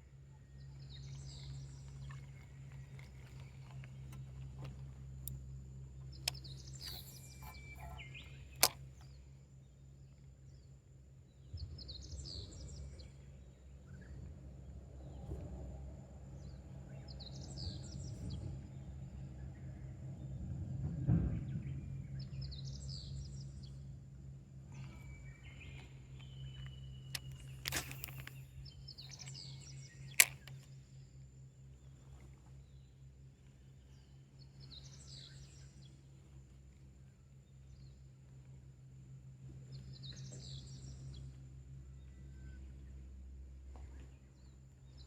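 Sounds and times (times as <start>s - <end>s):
low steady hum: 0.0s - 45.0s
sharp click: 6.1s - 9.1s, 26.2s - 30.7s
small birds calling: 6.1s - 9.2s.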